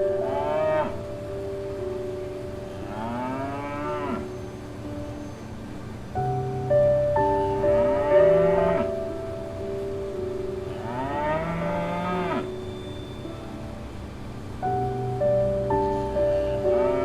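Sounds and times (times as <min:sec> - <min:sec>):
cow mooing: 0:02.8 - 0:04.3, 0:07.8 - 0:08.9, 0:10.7 - 0:12.5.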